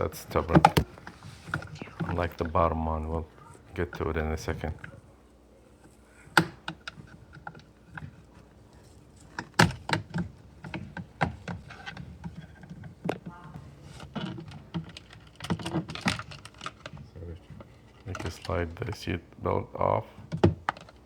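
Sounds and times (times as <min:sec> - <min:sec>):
plastic clips popping loose: 0:06.4 - 0:08.1.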